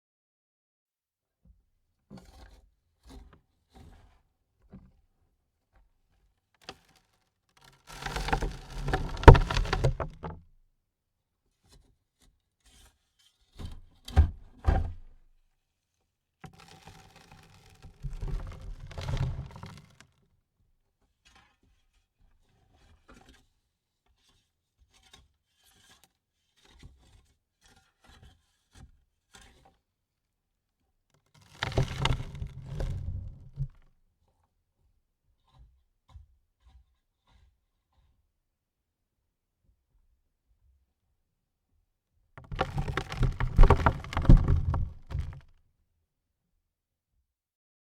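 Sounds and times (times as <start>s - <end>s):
soil thrown onto coffin lid: 8.3s - 10.2s.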